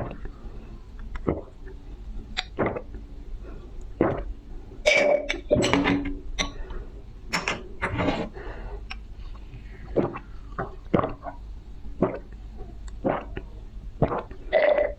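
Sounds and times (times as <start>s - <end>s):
swallowing: 0.0s - 5.6s, 7.8s - 14.9s
gulps and slurps: 0.0s - 5.8s, 7.8s - 14.9s.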